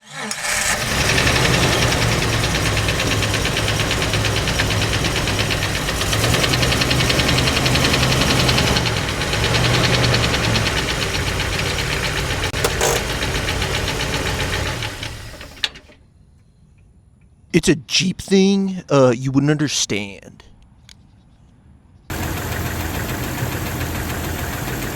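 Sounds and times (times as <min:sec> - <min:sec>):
engine running with knocking: 0:00.8 - 0:15.9, 0:22.1 - 0:24.9.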